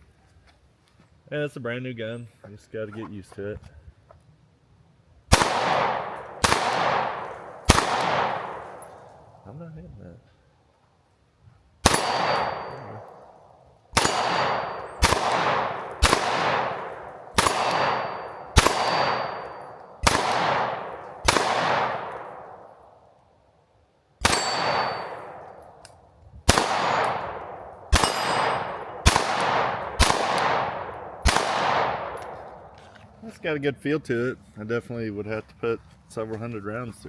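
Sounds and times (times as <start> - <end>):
pistol shots: 5.3 - 9.3, 11.8 - 23.0, 24.2 - 32.8
steel plate ringing: 11.9 - 13.1, 14.0 - 15.2, 17.5 - 20.0, 24.2 - 25.3, 28.0 - 28.9.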